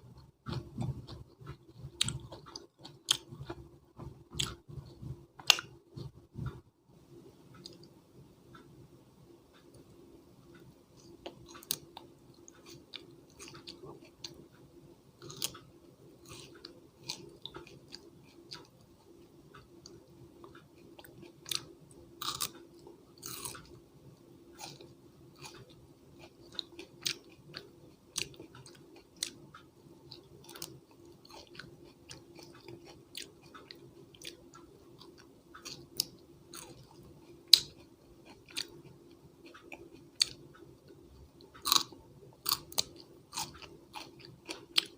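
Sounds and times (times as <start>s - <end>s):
faint steady hum: 0.0s - 44.9s
chewing crunchy raw vegetables: 0.2s - 6.1s, 11.2s - 14.4s, 15.2s - 15.6s, 16.2s - 18.8s, 20.4s - 23.8s, 24.6s - 40.4s, 41.5s - 44.9s.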